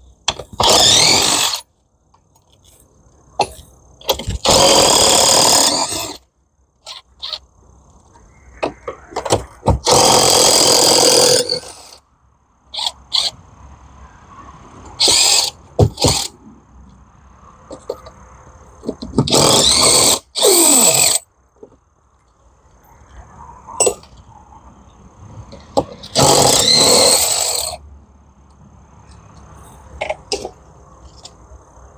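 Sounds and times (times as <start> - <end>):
impact wrench spinning: 0.3 - 1.6, 25.8 - 27.8.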